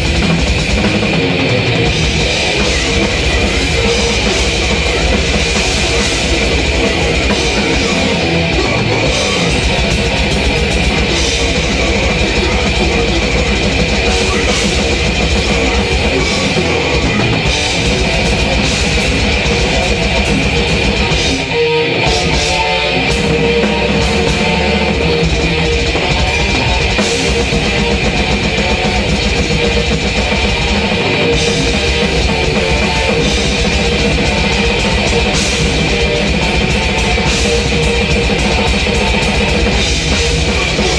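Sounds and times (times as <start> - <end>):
electric guitar: 0.0 - 40.9
heavy metal drum kit: 0.0 - 40.9.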